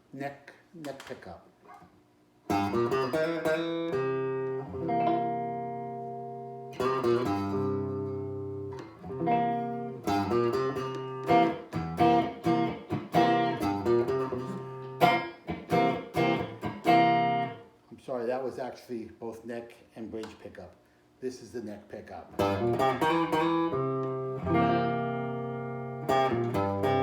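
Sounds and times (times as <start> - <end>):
electric guitar strumming chords: 2.5 - 17.7, 22.4 - 27.0.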